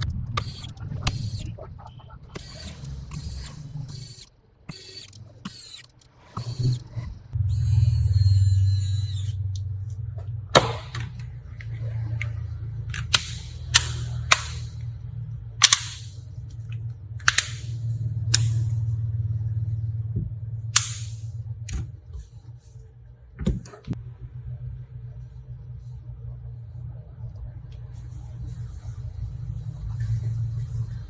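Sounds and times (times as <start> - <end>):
sharp clicks: 0.0 - 7.1, 13.0 - 14.8, 15.6 - 16.2, 17.2 - 18.7, 20.8 - 21.8
steady low hum: 0.0 - 31.0
short high whine: 6.4 - 9.7.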